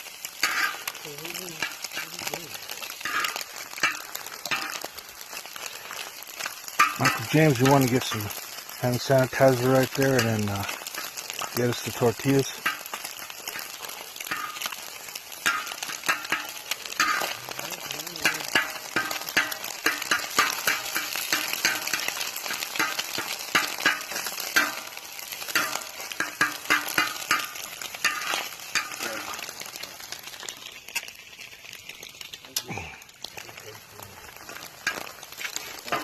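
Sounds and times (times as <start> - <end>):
food sizzling on hot disc: 0.0 - 36.0
metal utensil scraping disc: 0.4 - 0.9.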